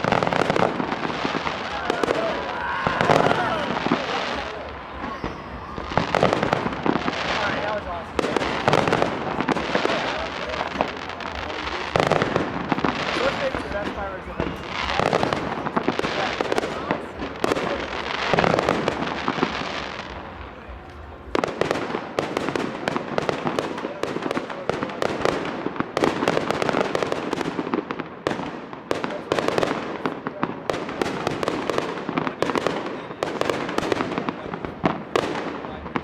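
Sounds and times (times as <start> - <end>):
fireworks bangs and crackles: 0.0 - 36.0.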